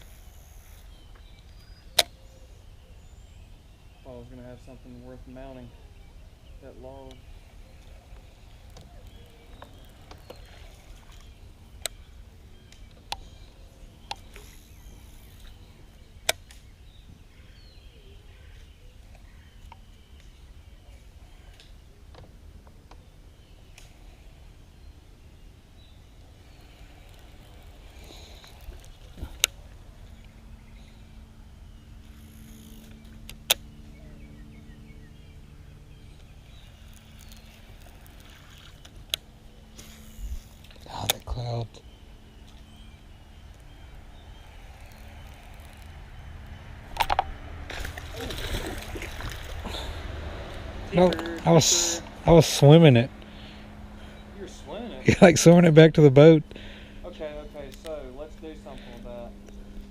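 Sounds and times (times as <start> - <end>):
faint bird chirps: 0.0 - 22.2
electric trolling motor humming: 0.0 - 59.9
faint low rumble: 0.0 - 59.9.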